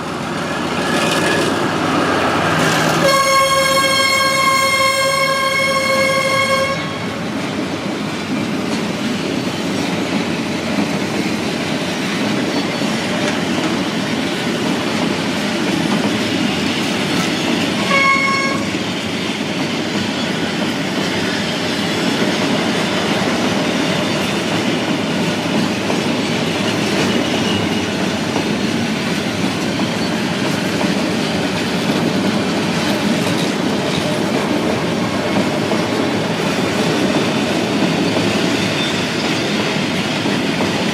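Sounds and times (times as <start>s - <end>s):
diesel train running: 0.0s - 40.9s
train horn blast: 3.0s - 7.2s, 17.8s - 18.7s.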